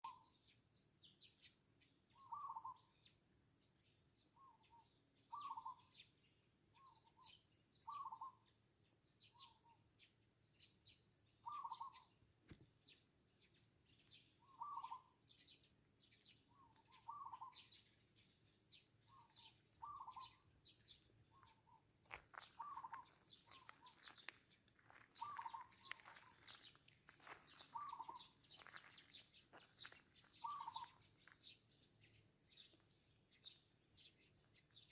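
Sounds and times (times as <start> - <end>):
sparrows chirping: 0.0 - 34.9
dove cooing: 2.2 - 2.8, 5.3 - 5.8, 7.9 - 8.4, 11.5 - 12.1, 14.4 - 15.1, 16.6 - 17.7, 19.1 - 20.4, 22.4 - 24.2, 25.2 - 26.7, 27.6 - 28.9, 30.4 - 31.0.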